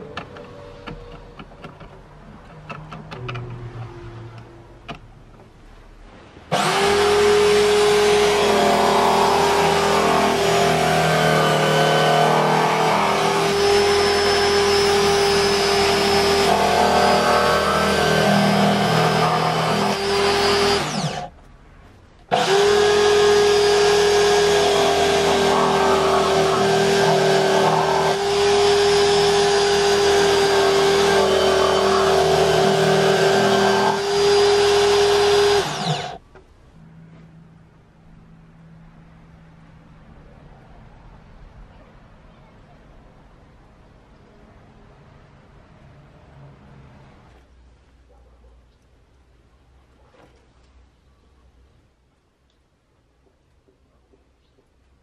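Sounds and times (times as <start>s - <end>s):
electric drill motor running: 6.5s - 21.3s, 22.3s - 36.2s.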